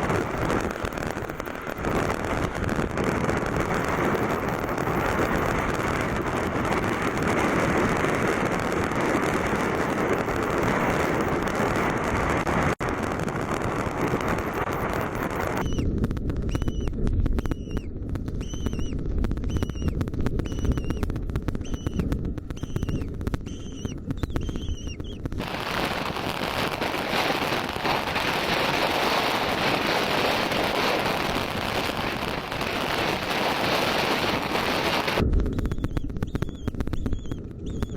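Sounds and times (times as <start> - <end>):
loud low rumble: 0.0 - 37.9
bird calling: 15.5 - 15.9, 16.5 - 25.9, 33.0 - 37.9.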